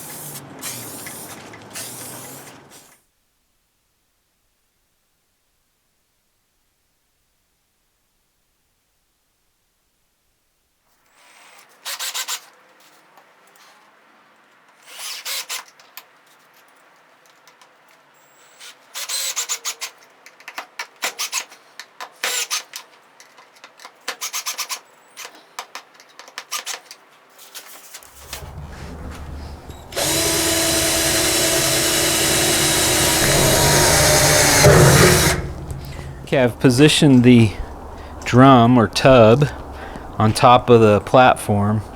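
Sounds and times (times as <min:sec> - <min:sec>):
rag rubbing on metal: 0:28.2 - 0:37.0.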